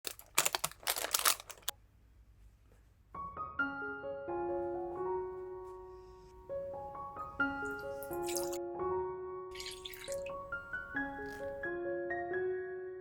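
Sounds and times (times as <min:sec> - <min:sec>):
gentle piano music: 0:03.1 - 0:13.0.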